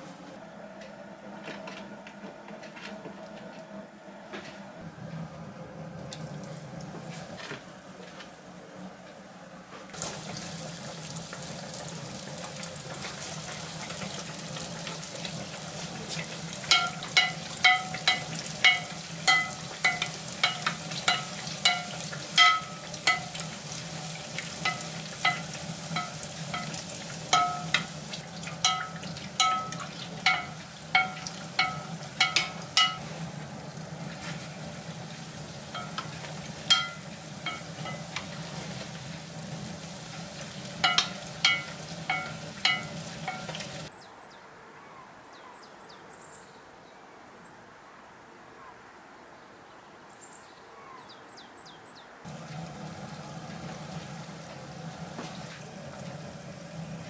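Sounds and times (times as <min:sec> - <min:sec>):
donuts sizzling in oil: 0:09.9 - 0:43.9, 0:52.3 - 0:57.0
metal utensil clinking on pan: 0:16.1 - 0:23.8, 0:24.4 - 0:33.2, 0:35.7 - 0:38.4, 0:40.8 - 0:43.9.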